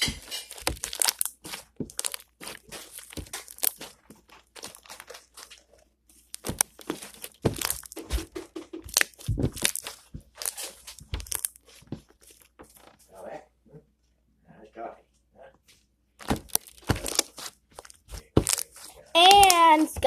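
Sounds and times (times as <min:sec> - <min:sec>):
slime squeezed by hand: 0:00.0 - 0:12.5.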